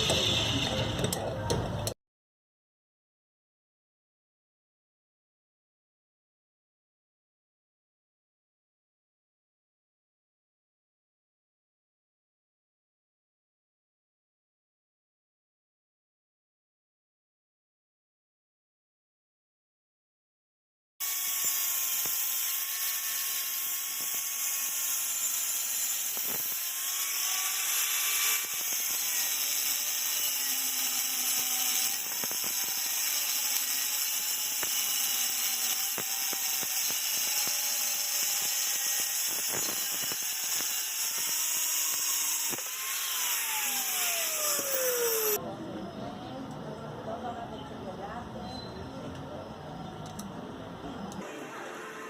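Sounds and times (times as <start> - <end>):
power tool motor whining: 0.0 - 1.2, 21.0 - 45.4.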